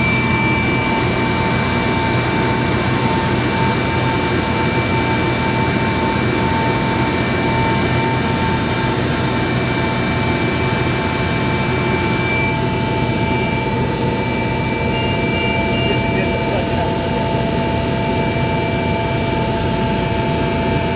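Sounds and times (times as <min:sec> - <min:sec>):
helicopter engine noise: 0:00.0 - 0:20.9
high engine whines: 0:00.0 - 0:20.9.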